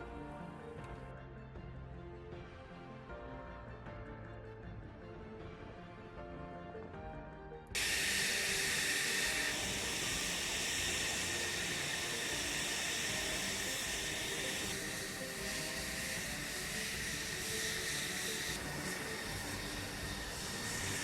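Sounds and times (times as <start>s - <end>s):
music: 0.0s - 21.0s
jet aircraft hiss and whine: 7.8s - 21.0s.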